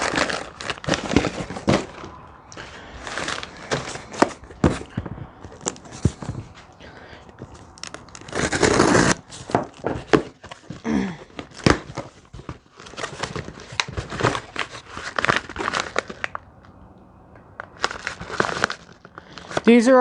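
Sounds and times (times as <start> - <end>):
wrapping crinkling and tearing: 0.0 - 16.8, 17.6 - 20.0.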